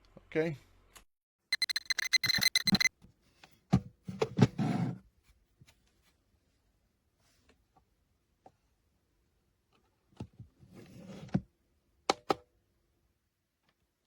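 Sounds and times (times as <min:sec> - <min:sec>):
alarm clock beeping: 0:01.5 - 0:02.9.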